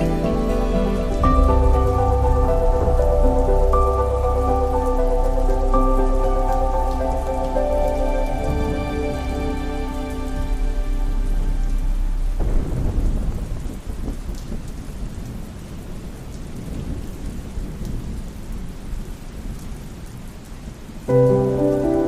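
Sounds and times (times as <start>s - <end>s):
sustained music chord: 0.0s - 13.0s
thunder rumbling: 0.0s - 19.6s
steady rain: 0.0s - 22.0s.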